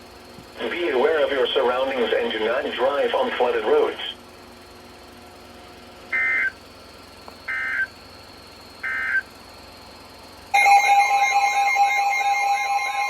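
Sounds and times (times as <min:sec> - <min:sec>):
two-tone warbling alarm: 0:06.1 - 0:06.5, 0:07.5 - 0:07.9, 0:08.8 - 0:09.2, 0:10.5 - 0:13.0
digital data tone bursts: 0:06.1 - 0:06.6, 0:07.5 - 0:07.9, 0:08.8 - 0:09.3.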